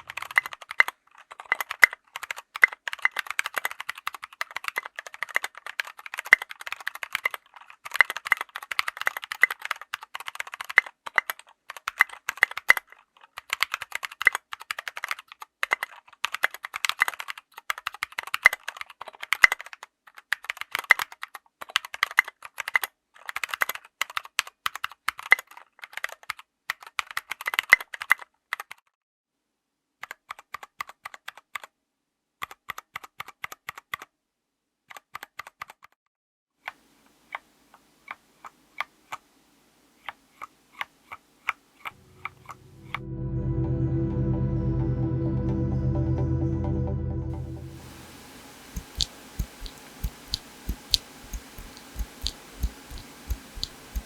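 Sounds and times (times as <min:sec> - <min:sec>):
mechanical keyboard typing: 0:00.0 - 0:28.9, 0:30.0 - 0:31.7, 0:32.4 - 0:34.1, 0:34.9 - 0:36.0, 0:47.8 - 0:54.0.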